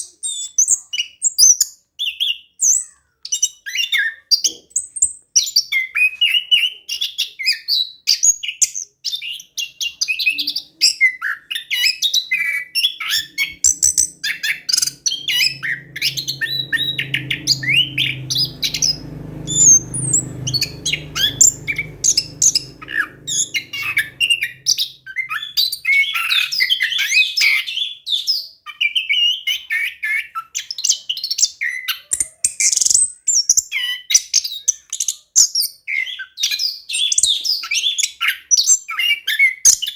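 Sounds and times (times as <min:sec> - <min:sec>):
faint low hum: 0:12.8 - 0:25.8
thrush singing: 0:13.0 - 0:25.7.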